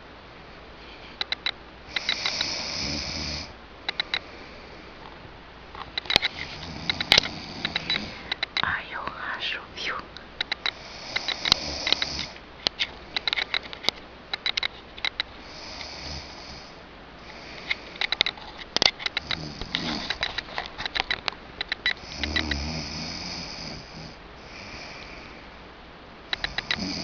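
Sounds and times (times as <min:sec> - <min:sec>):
sharp clicks: 0:01.1 - 0:02.6, 0:03.9 - 0:04.3, 0:05.8 - 0:15.9
person snoring: 0:02.0 - 0:03.5, 0:10.8 - 0:12.4, 0:22.0 - 0:25.1, 0:26.4 - 0:27.0.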